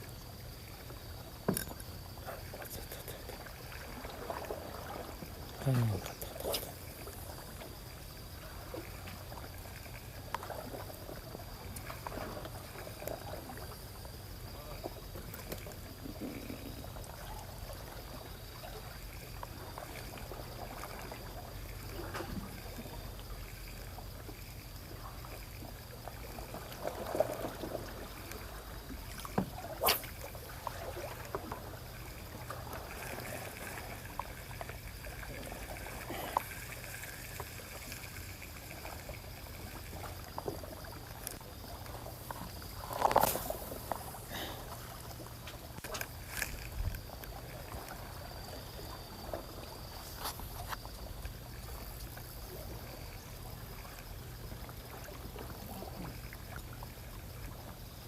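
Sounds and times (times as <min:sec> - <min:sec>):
small waves lapping on shore: 0:00.0 - 0:58.0
fishing gear clicks and knocks: 0:01.5 - 0:02.0, 0:42.4 - 0:44.0.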